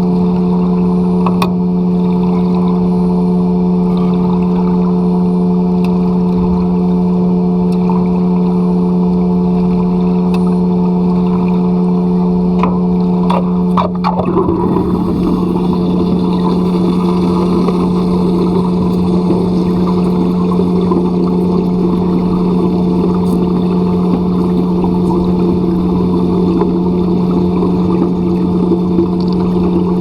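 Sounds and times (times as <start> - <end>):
motor running steadily: 0.0 - 30.0
rough rushing noise: 14.3 - 27.9.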